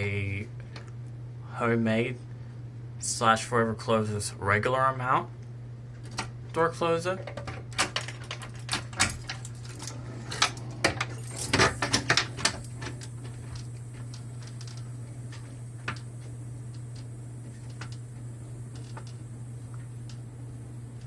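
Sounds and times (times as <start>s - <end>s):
steady low hum: 0.0s - 21.0s
cabinet door clicks and rattles: 7.3s - 9.4s.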